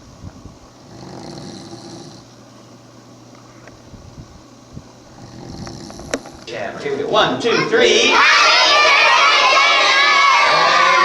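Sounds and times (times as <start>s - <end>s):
man snoring loudly: 0.8s - 2.3s, 5.1s - 6.4s.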